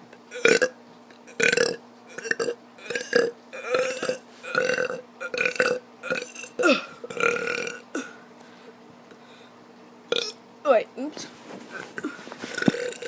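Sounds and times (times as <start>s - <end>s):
child burping: 1.3s - 8.2s, 11.9s - 13.0s.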